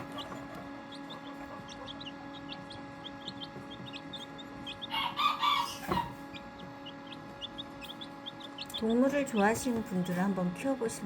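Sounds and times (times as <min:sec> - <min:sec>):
chicks peeping: 0:00.0 - 0:11.0
steady hum: 0:00.0 - 0:11.0
chicken call: 0:04.8 - 0:06.3.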